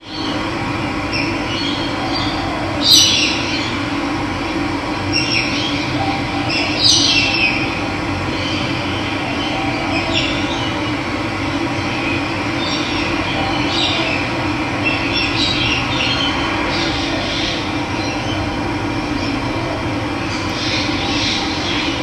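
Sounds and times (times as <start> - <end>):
birds calling: 0.0 - 22.0.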